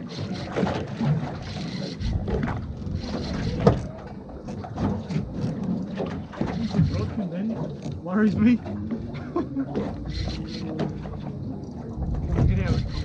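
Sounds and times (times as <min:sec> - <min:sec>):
water slapping against boat hull: 0:00.0 - 0:13.0
wind buffeting microphone: 0:11.3 - 0:13.0.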